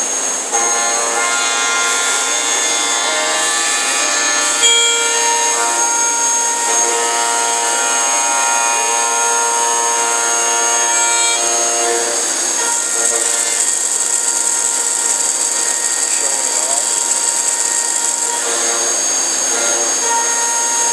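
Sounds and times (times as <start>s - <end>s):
high ringing whine: 0.0s - 20.9s
milling machine cutting metal: 0.0s - 20.9s.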